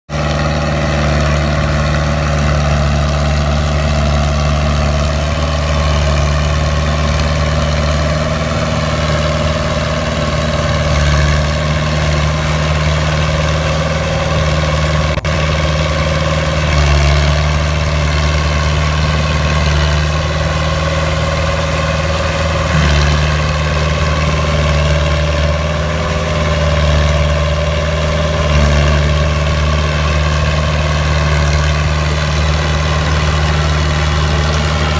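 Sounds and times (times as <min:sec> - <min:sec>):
tractor diesel engine running: 0:00.1 - 0:34.9.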